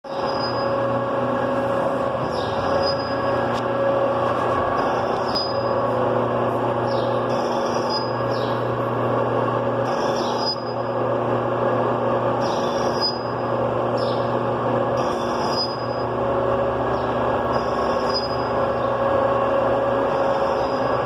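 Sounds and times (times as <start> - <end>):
machine tool running: 0.0 - 21.0
brief high squeal: 0.1 - 0.8, 2.3 - 3.3, 17.6 - 18.5.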